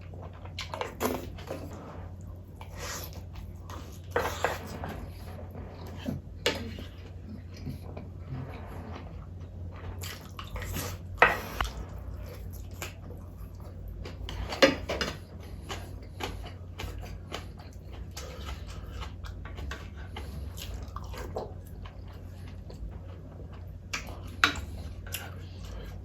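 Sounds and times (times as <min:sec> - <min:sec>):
steady low hum: 0:00.0 - 0:26.0
chewing and mouth smacks: 0:09.8 - 0:26.0.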